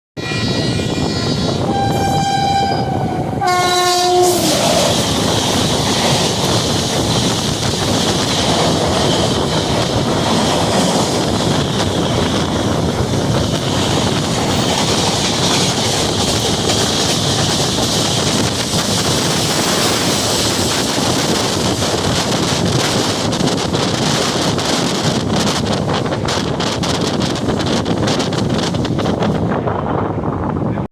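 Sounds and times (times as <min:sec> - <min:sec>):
locomotive multi-tone horn: 0:00.2 - 0:04.9
train rumbling on rails: 0:00.2 - 0:30.9.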